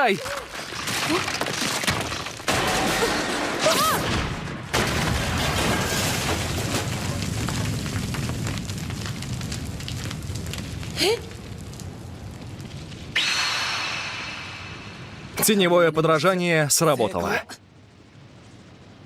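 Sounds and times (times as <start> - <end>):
rising whoosh: 13.2 - 15.4.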